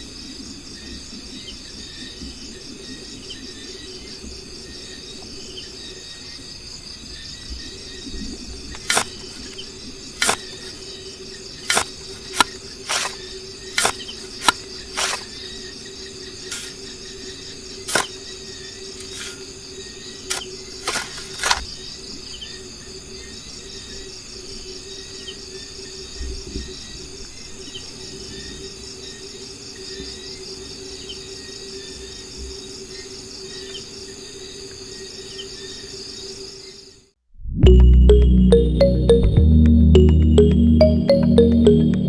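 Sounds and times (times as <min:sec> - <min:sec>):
sharp clicks: 0:08.8 - 0:09.6, 0:10.2 - 0:10.8.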